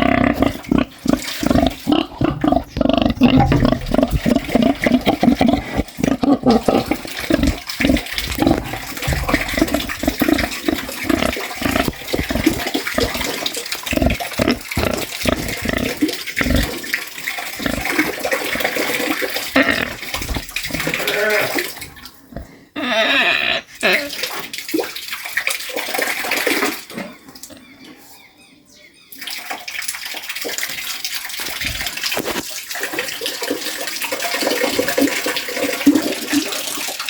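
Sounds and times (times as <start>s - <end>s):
pig grunting and snuffling: 0.0s - 24.2s
wet watery noise: 0.0s - 27.5s, 29.2s - 37.0s.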